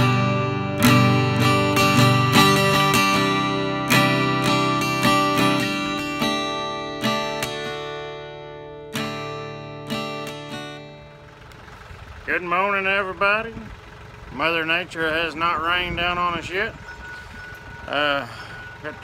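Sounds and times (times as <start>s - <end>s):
acoustic guitar strumming chords: 0.0s - 13.6s, 15.2s - 19.0s.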